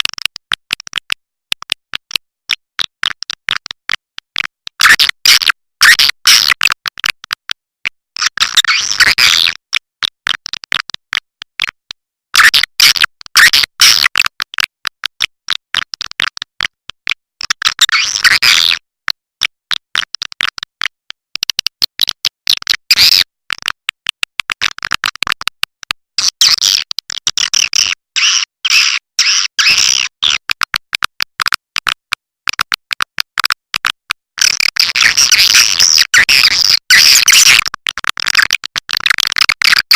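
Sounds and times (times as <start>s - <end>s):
swiftlet calls rapid clicks: 29.6s - 39.9s.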